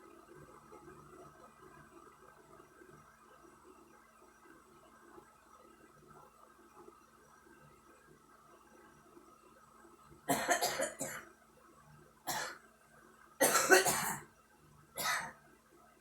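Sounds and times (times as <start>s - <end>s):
woman coughing: 10.3s - 11.2s, 12.3s - 12.6s, 13.4s - 14.2s, 15.0s - 15.3s.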